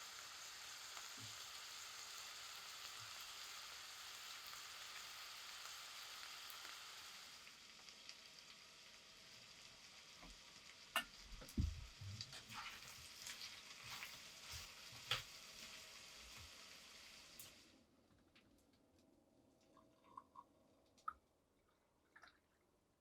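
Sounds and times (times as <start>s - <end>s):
food sizzling in a pan: 0.0s - 17.8s.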